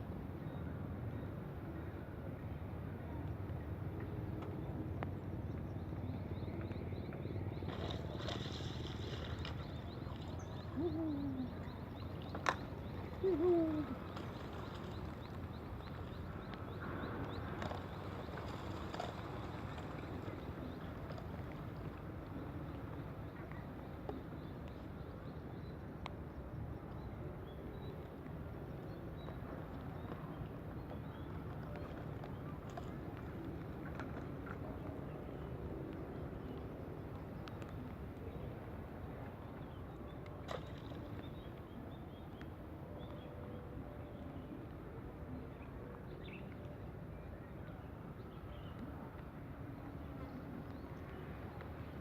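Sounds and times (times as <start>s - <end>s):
steady low outdoor noise: 0.0s - 52.0s
water and wind: 0.0s - 52.0s.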